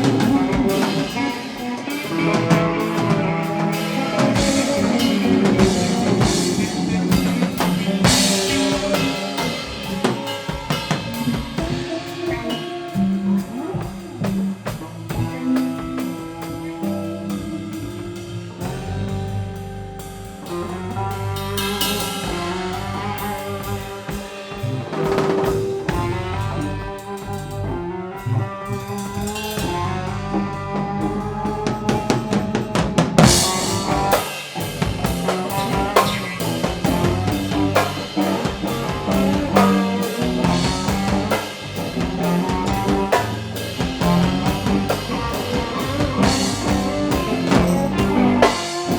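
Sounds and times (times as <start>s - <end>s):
bass guitar: 0.0s - 48.9s
drum kit: 0.0s - 48.9s
electric guitars: 0.0s - 48.9s.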